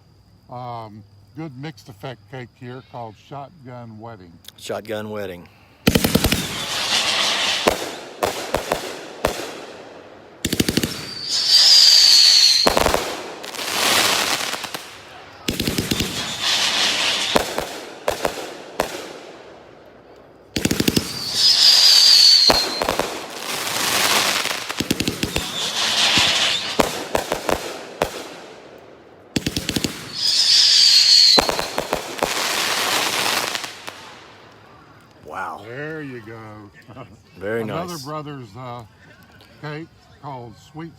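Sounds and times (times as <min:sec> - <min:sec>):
firework bursts in the air: 0:05.8 - 0:19.5, 0:20.5 - 0:28.7, 0:29.3 - 0:34.8
firework launch shots: 0:05.8 - 0:19.7, 0:20.5 - 0:34.8
high falling firework whistle: 0:05.9 - 0:09.7, 0:10.6 - 0:19.1, 0:20.6 - 0:28.3, 0:29.8 - 0:34.0.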